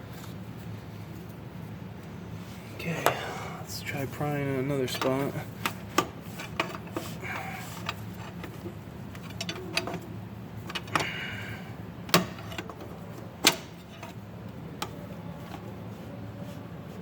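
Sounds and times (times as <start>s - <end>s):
steady low hum: 0.0s - 17.0s
metal clicks and knocks: 7.8s - 10.1s.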